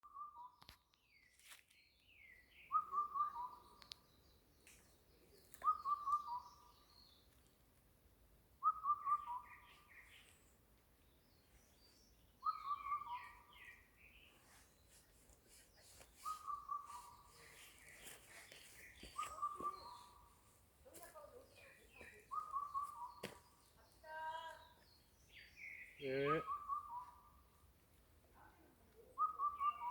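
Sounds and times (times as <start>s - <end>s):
high bird chirps: 5.6s - 7.2s, 11.8s - 14.7s, 15.9s - 20.4s, 21.5s - 27.5s, 29.2s - 29.9s.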